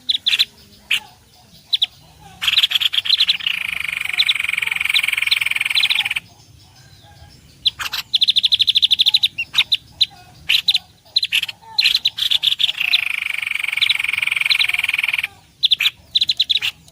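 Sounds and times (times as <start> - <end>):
bird chirps: 0.0 - 16.9
songbird trilling: 0.0 - 16.9.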